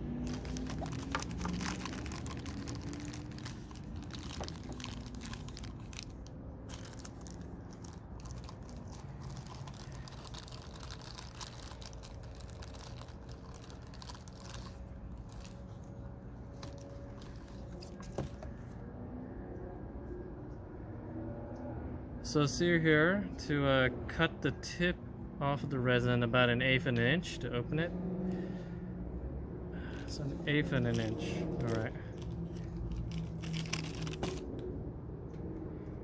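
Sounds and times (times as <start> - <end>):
plastic packaging crinkling: 0.0 - 18.6, 30.7 - 34.6.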